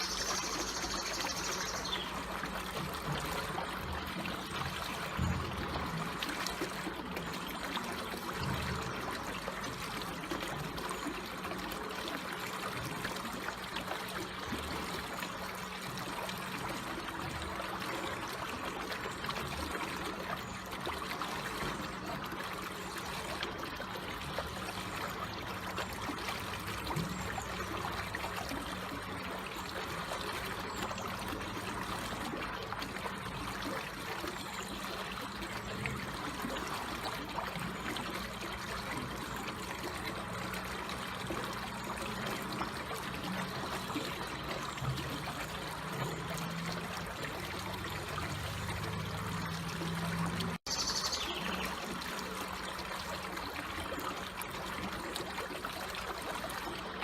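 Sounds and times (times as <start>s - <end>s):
trickling stream: 0.0s - 57.0s.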